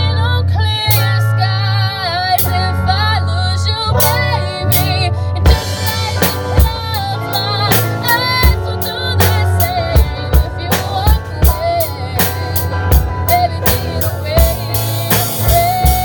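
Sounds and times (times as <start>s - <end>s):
lead vocal with vibrato: 0.0s - 16.0s
live band playing: 2.0s - 16.0s.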